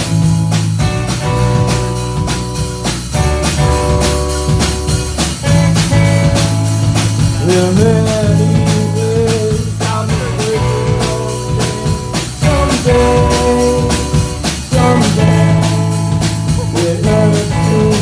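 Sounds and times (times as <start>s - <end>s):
bass notes: 0.0s - 18.0s
drum kit beat: 0.0s - 18.0s
guitar: 0.0s - 18.0s.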